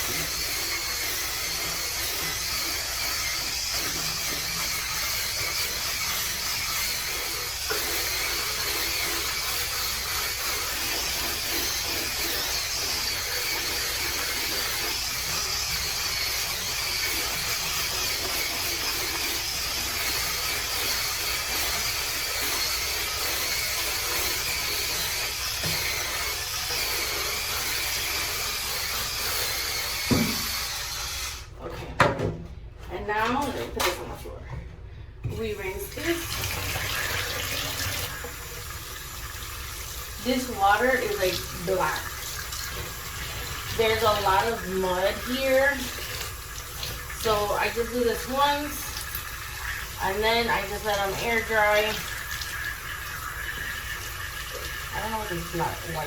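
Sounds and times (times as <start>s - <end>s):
electric scrub brush running: 0.0s - 31.5s, 35.4s - 56.0s.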